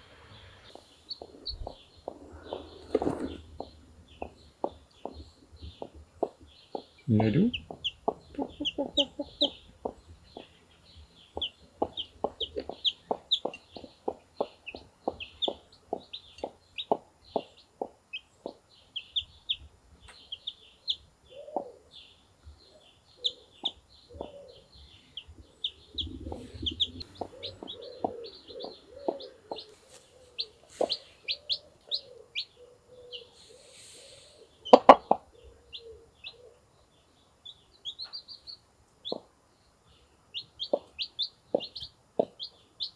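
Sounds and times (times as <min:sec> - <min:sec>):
chicks peeping: 0:00.0 - 0:42.9
hen clucking softly: 0:00.7 - 0:10.7, 0:11.3 - 0:18.6, 0:23.2 - 0:36.6, 0:39.0 - 0:39.3, 0:40.3 - 0:42.9.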